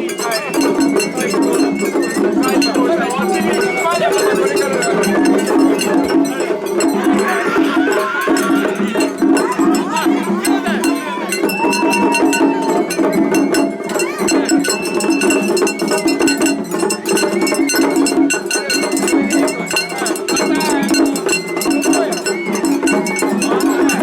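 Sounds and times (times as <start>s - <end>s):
dense drumming: 0.0s - 18.3s
bamboo flute wavering notes: 7.3s - 24.0s.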